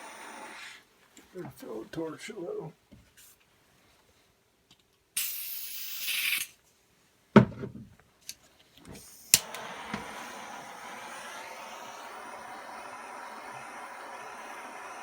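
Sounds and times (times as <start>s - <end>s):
torch flame hissing: 0.0s - 0.9s, 5.2s - 6.5s, 8.9s - 15.0s
torch clicks: 9.0s - 15.0s
torch knock: 9.3s - 15.0s.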